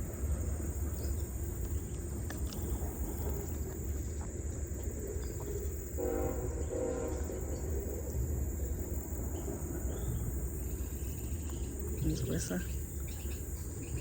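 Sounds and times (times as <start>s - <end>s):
distant train horn: 6.0s - 8.1s.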